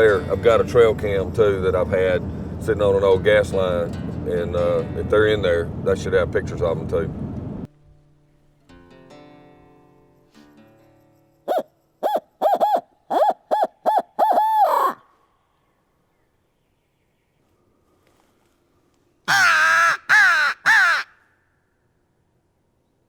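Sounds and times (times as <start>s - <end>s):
owl hooting: 11.5s - 15.1s, 19.3s - 21.2s
crow cawing: 19.3s - 21.5s.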